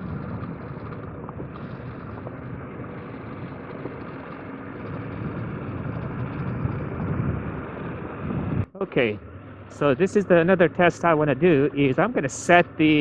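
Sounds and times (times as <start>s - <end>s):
wind noise: 0.0s - 8.7s
motorcycle engine running: 0.0s - 13.0s.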